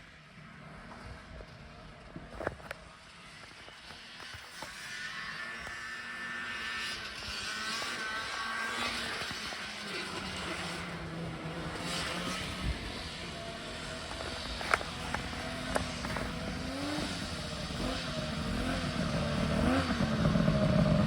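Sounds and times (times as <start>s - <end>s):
vehicle engine running: 9.2s - 21.0s.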